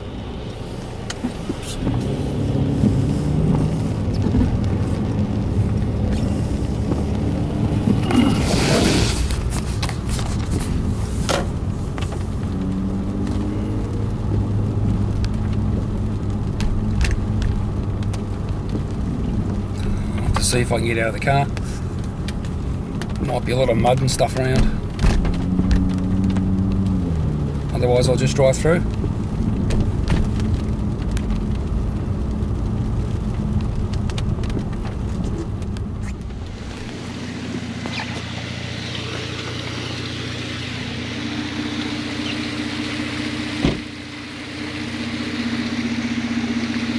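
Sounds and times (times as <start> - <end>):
car engine running low: 0.0 - 46.9
water drops tapping on car: 21.5 - 23.3.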